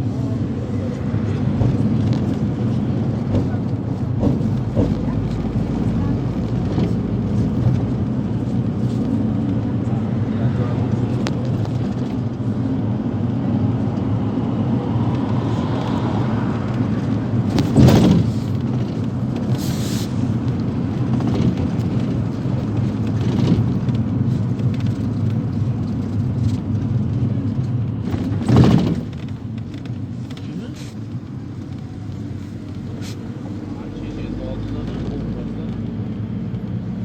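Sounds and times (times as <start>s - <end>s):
engine and road rumble: 0.0s - 37.0s
loud thumps: 17.4s - 19.0s.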